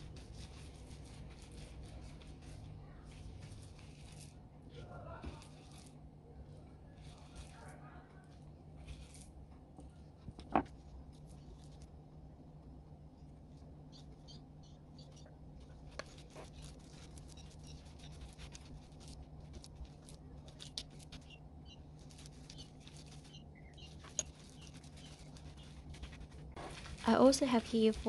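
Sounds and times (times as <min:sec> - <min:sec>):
steady low hum: 0:00.0 - 0:28.0
sticky clicks and squelches: 0:15.0 - 0:28.0.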